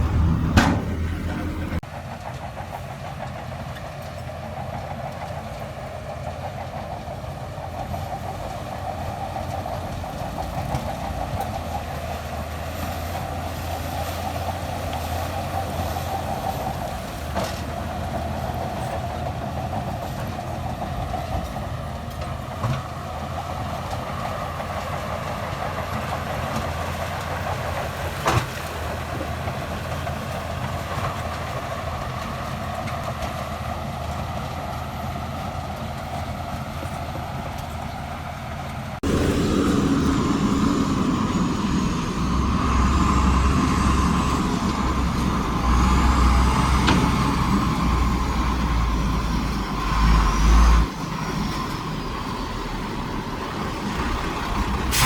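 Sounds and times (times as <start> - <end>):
sharp metallic clanks: 0.0 - 1.8
bulldozer diesel engine running: 0.0 - 55.0.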